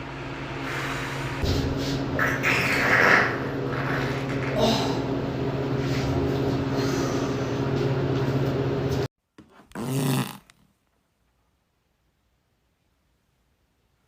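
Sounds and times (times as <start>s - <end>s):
buzzing fart: 1.4s - 4.6s, 9.7s - 10.6s
short bending fart: 9.6s - 10.6s.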